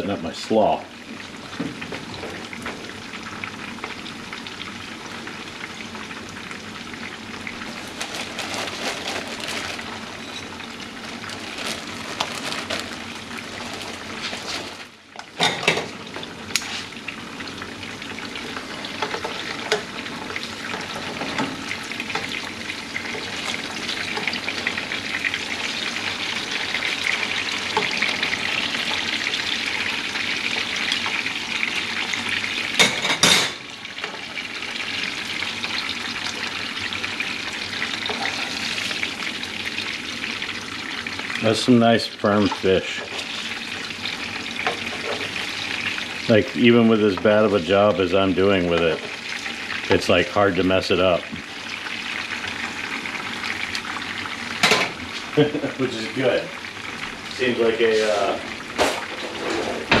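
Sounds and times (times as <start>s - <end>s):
fish sizzling in hot oil: 0.2s - 60.0s.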